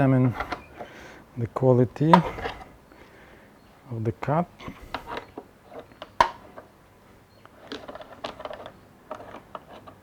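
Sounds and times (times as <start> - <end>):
wood and metal clicks and knocks: 7.5 - 10.0.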